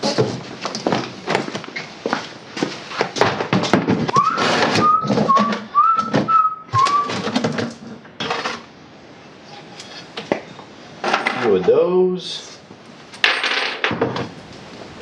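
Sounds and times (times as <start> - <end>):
person whistling a tune: 4.1 - 7.2.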